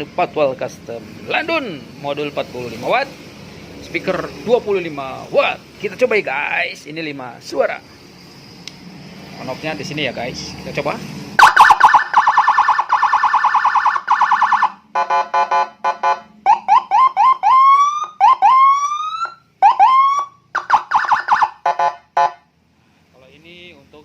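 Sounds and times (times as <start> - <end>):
electronic siren: 11.4 - 22.4.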